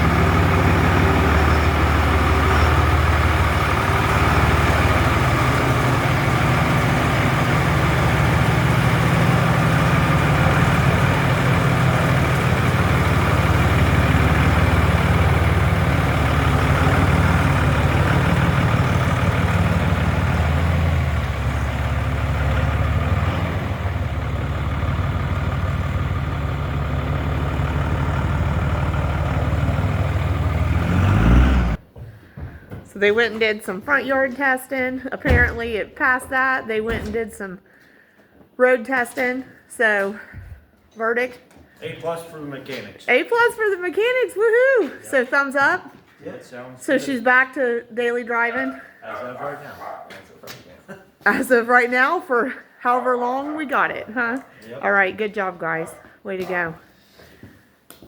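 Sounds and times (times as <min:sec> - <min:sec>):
diesel engine idling: 0:00.0 - 0:31.8.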